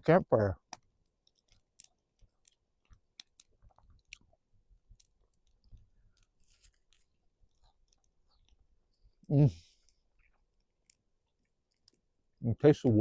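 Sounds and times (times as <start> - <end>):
mouth clicks and smacks: 0.6 - 6.3
person chewing: 0.7 - 12.1.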